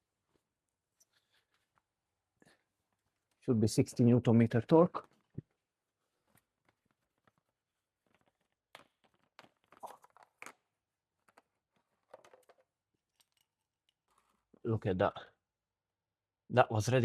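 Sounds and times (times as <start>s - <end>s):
faint clicks and rustles of tools: 0.2s - 3.5s, 5.0s - 14.6s.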